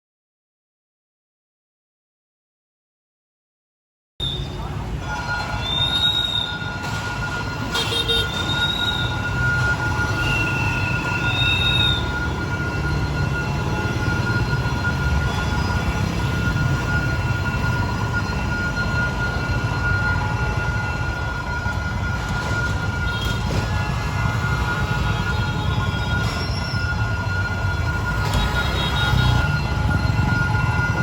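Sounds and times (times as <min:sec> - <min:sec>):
wheel squeals: 0:04.2 - 0:16.3, 0:25.9 - 0:31.0.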